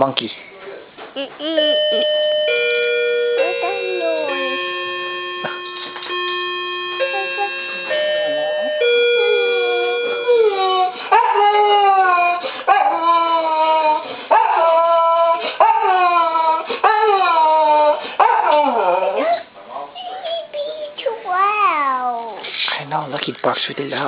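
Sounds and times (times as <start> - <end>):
electronic toy tones: 1.6 - 10.3
dog howling and yelping: 10.2 - 19.4.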